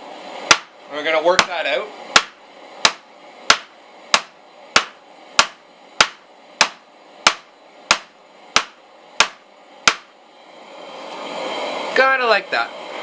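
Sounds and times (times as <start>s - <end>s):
hammer striking steel on anvil: 2.2s - 10.1s.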